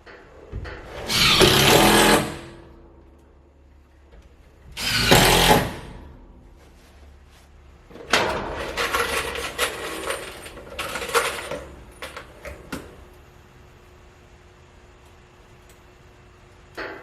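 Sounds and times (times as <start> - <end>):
screws clinking and rattling: 8.1 - 12.6.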